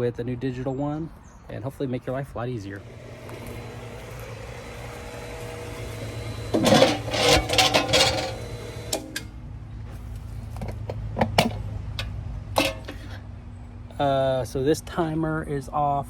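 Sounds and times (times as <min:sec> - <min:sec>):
low mechanical hum: 0:02.7 - 0:14.5
rattling and clattering: 0:06.1 - 0:09.2.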